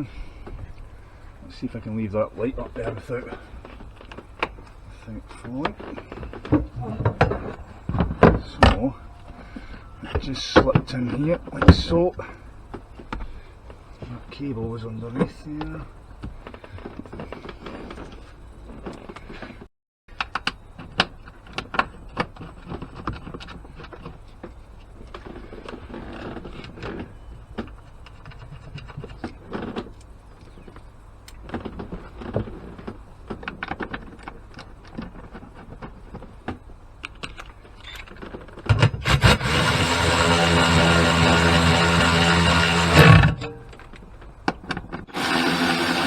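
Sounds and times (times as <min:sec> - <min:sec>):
hand tools and parts clicking: 0:37.0 - 0:44.1.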